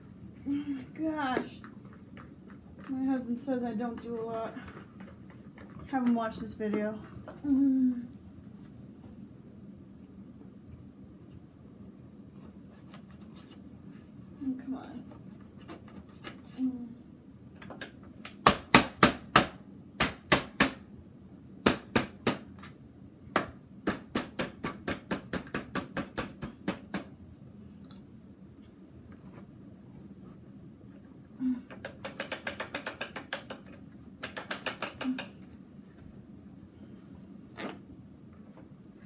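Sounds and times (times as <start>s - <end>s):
faint steady hum: 0.0s - 39.0s
taps and knocks on vacuum cleaner: 31.7s - 35.3s.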